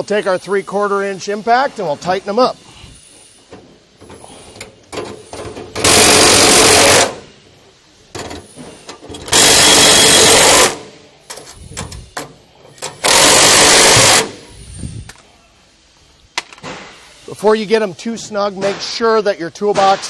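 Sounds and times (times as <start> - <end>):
impact wrench hammering: 3.5 - 7.2, 8.2 - 14.4, 18.6 - 20.0.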